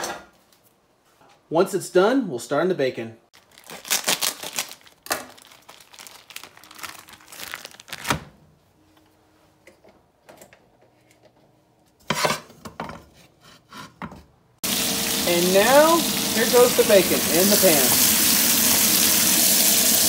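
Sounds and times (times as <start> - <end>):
rubbing and crinkling handling noises: 3.4 - 8.3
bacon sizzling in a frying pan: 14.6 - 20.0.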